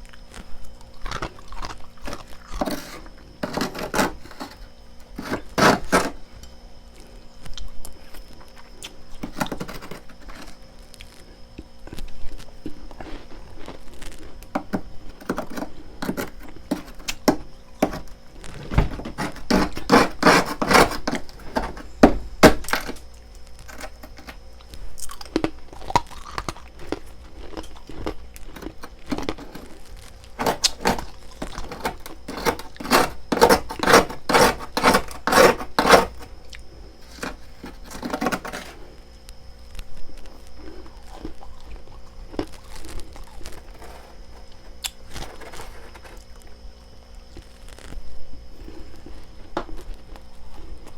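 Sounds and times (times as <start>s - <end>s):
ice crunching while chewed: 0.0s - 46.6s.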